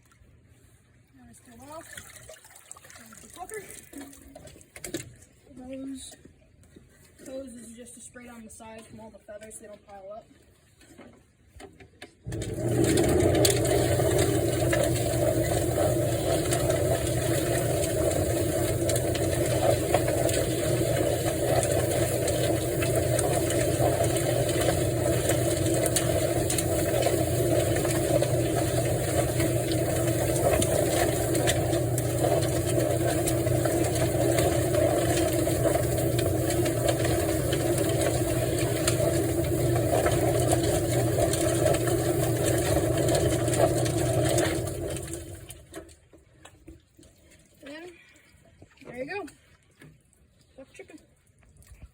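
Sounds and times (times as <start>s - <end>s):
chicken plucker motor running: 12.3s - 45.7s.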